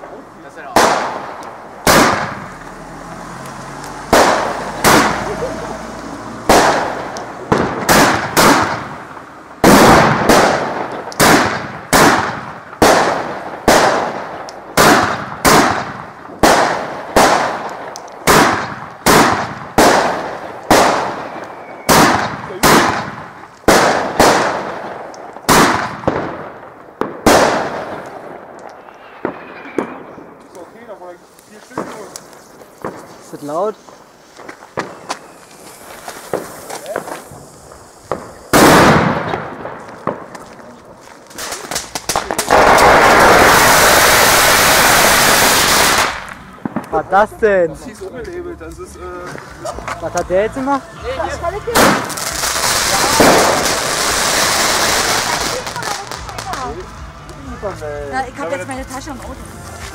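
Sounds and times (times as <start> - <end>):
fireworks bangs: 0.0 - 48.1, 48.8 - 59.9.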